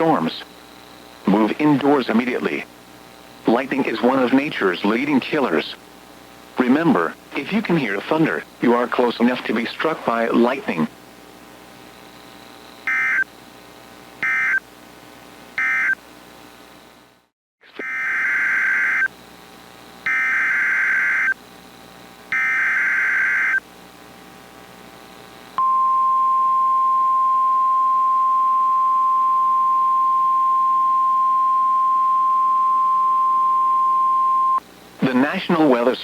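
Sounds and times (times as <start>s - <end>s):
buzzing data tone bursts: 12.2s - 13.3s, 14.2s - 14.7s, 15.6s - 16.0s, 17.8s - 19.2s, 20.0s - 21.4s, 22.3s - 23.7s, 25.6s - 35.2s
steady warning alarm tone: 12.9s - 13.3s, 14.2s - 14.6s, 15.6s - 16.0s, 17.8s - 19.1s, 20.0s - 21.4s, 22.3s - 23.6s, 25.6s - 34.6s.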